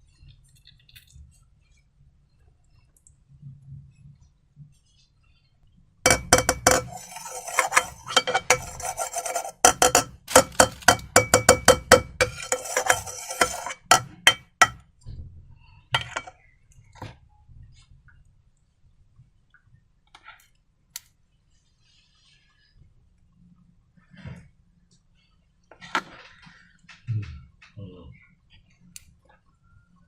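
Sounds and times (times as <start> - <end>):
utensil scraping container: 6.1 - 14.8, 16.0 - 16.3.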